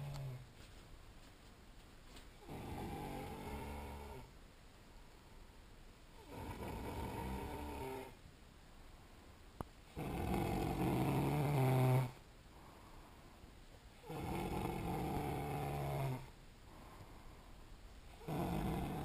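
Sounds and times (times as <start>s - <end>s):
man snoring: 2.4s - 4.3s, 6.2s - 8.2s, 9.9s - 12.2s, 14.0s - 16.3s, 18.1s - 19.0s.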